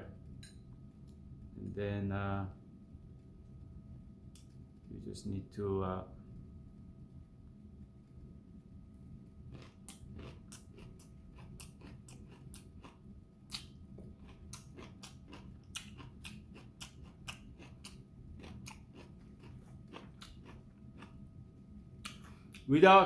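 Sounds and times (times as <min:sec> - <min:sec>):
chewing crunchy cabbage: 0:09.4 - 0:21.2.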